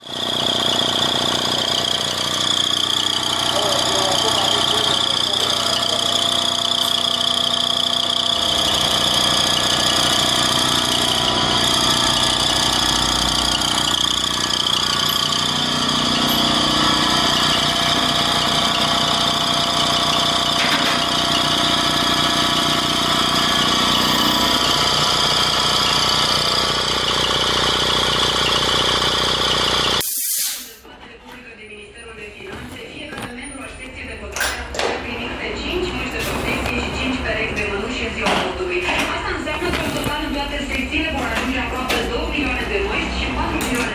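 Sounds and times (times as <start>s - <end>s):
air compressor running: 0.0s - 30.9s, 38.9s - 42.8s.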